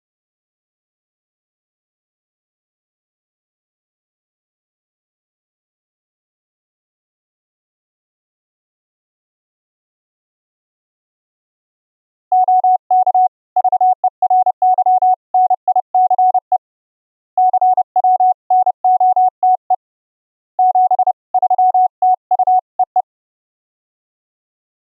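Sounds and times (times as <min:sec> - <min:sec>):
morse code sine tone: 0:12.4 - 0:16.6, 0:17.4 - 0:19.8, 0:20.6 - 0:23.0.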